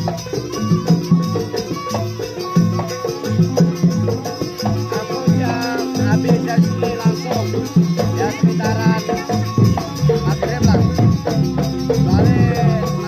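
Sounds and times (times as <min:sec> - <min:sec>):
rattling percussion: 0:00.0 - 0:13.0
wavering melodic line: 0:00.3 - 0:13.0
drum and gong strokes: 0:09.1 - 0:13.0.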